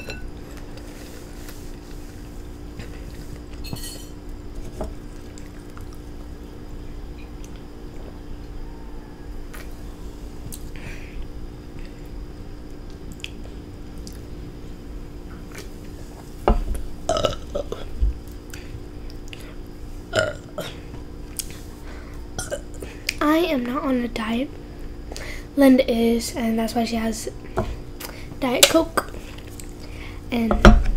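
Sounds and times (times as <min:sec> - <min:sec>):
child burping: 0:17.1 - 0:17.9, 0:22.4 - 0:22.6.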